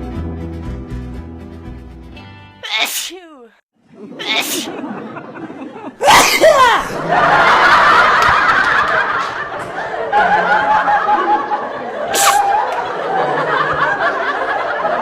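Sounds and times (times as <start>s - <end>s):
people laughing softly: 3.9s - 6.0s, 6.7s - 15.0s
short sharp hiss: 12.2s - 12.6s.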